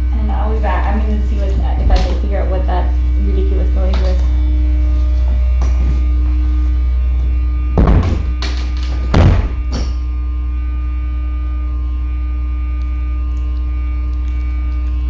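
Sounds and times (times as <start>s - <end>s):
pump buzzing hum: 0.0s - 15.0s
loud thumps: 7.7s - 10.1s.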